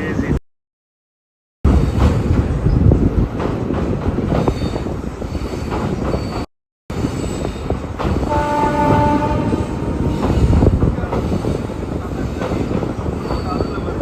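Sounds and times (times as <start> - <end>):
train wheels rumbling on track: 1.7 - 14.0
wind noise: 1.7 - 14.0
faint wheel squeals: 12.2 - 14.0.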